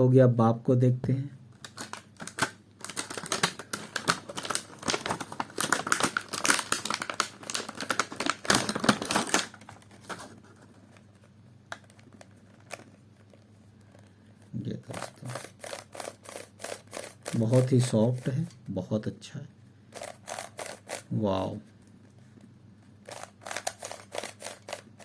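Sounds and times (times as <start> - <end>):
plastic crinkling: 1.6 - 14.0
puzzle cube clicking: 23.1 - 25.0.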